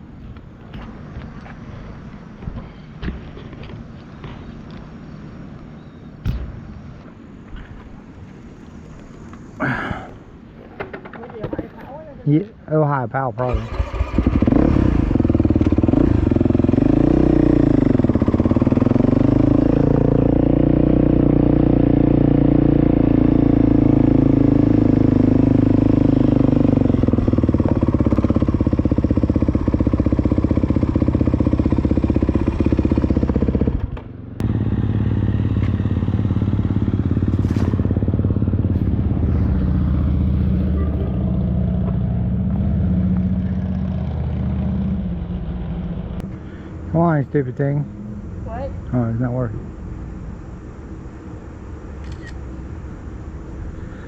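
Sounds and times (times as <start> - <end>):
motor vehicle engine running: 13.5 - 54.0.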